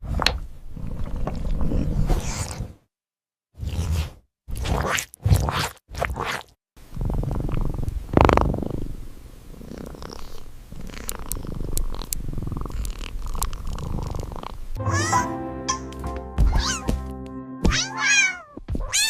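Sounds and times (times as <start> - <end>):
cat purring: 0.6 - 2.7, 6.9 - 14.8.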